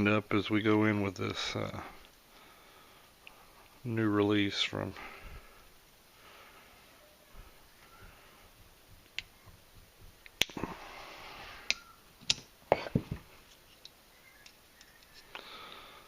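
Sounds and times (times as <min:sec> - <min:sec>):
sharp clicks and knocks: 0:08.9 - 0:10.6.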